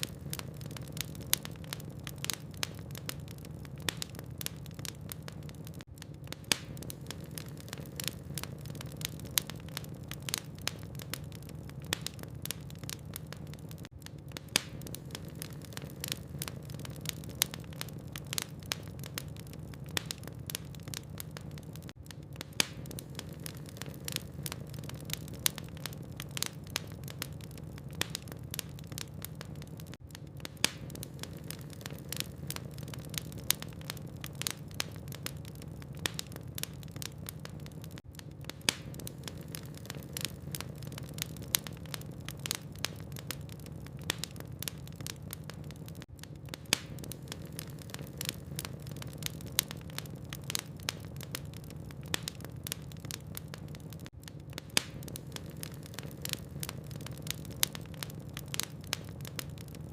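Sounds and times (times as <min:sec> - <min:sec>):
log fire crackling: 0:00.0 - 0:59.9.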